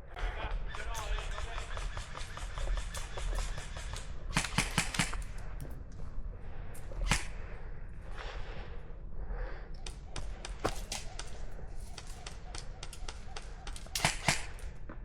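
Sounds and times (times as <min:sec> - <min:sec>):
airsoft gun cracks: 0:04.3 - 0:05.4, 0:12.2 - 0:14.7
steady low rumble: 0:05.1 - 0:15.0.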